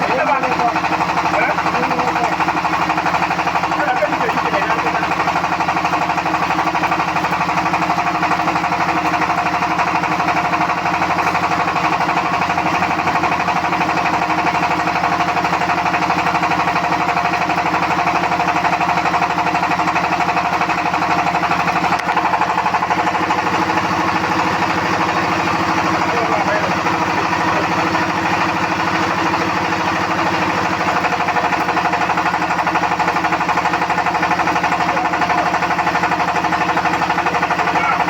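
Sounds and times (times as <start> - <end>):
machine running with fast pulse: 0.0 - 38.0.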